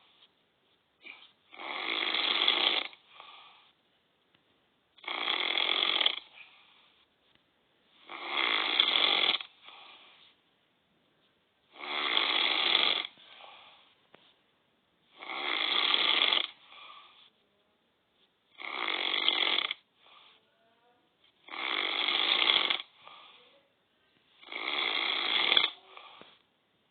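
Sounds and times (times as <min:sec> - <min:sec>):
man snoring: 0:01.5 - 0:03.0, 0:05.0 - 0:06.3, 0:08.1 - 0:09.6, 0:11.7 - 0:13.2, 0:15.2 - 0:16.6, 0:18.6 - 0:19.8, 0:21.4 - 0:22.9, 0:24.4 - 0:26.4.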